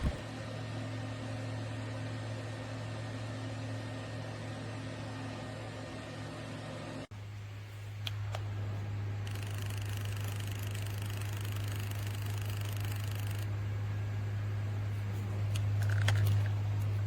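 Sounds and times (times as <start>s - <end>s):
electric fan humming: 0.0s - 17.0s.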